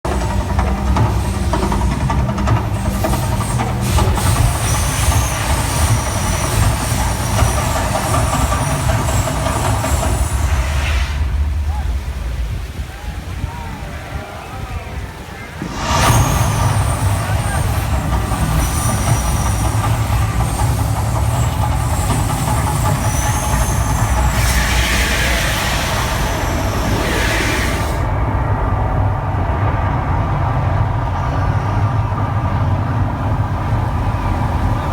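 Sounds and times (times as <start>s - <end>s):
low rumble: 0.0s - 34.9s
firework fountain rushing: 0.1s - 31.3s
thin high whistle: 2.9s - 11.9s, 15.5s - 28.2s.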